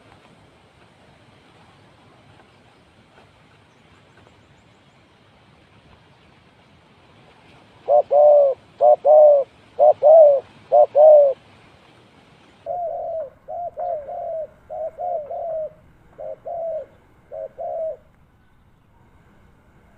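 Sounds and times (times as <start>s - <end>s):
dove cooing: 7.8s - 11.4s, 12.7s - 18.1s.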